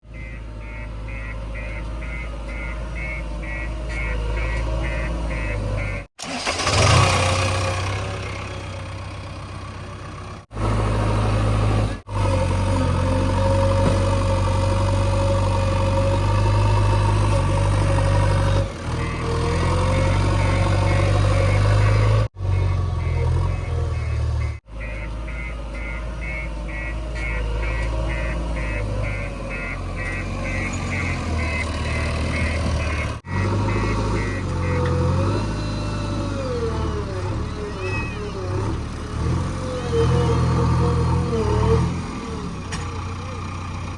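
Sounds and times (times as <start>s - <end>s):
diesel engine revving: 0.0s - 43.9s
rapid repeating beep: 20.4s - 34.8s.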